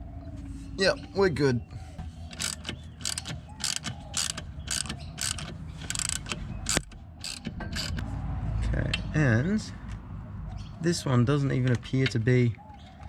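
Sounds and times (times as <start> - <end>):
ratchet wrench clicking: 2.3 - 8.0.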